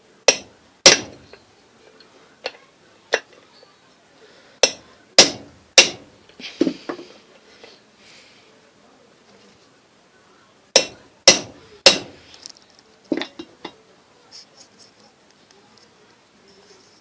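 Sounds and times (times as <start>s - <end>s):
hammer blows on metal: 4.6s - 6.2s, 10.8s - 12.3s.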